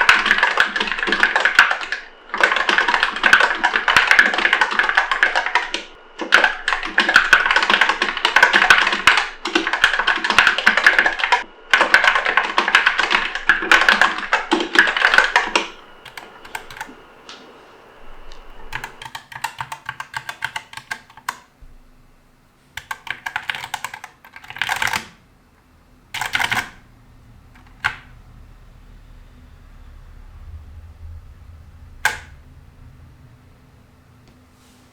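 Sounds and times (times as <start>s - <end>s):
fast typing on mechanical keyboard: 0.0s - 17.4s, 18.4s - 21.5s, 22.8s - 25.2s, 26.1s - 26.9s, 27.6s - 28.1s, 32.0s - 32.3s.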